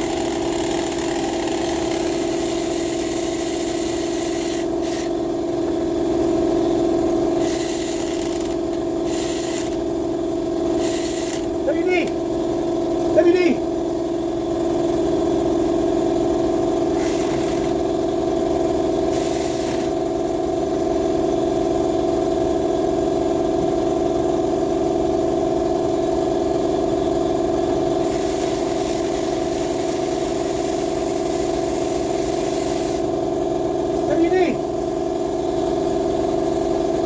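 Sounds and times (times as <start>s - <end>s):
steady mechanical hum: 0.0s - 37.0s
aerosol can spraying: 2.8s - 5.1s, 7.4s - 8.3s, 28.0s - 33.1s.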